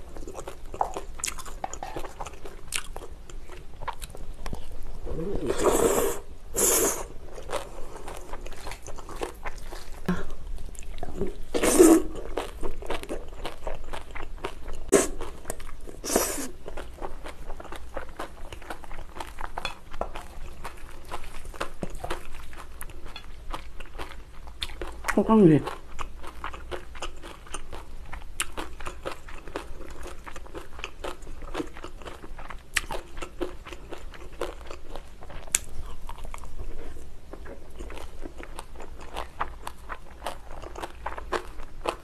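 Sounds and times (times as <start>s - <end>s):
person chewing with mouth clicks: 0.0s - 6.2s, 6.9s - 42.0s.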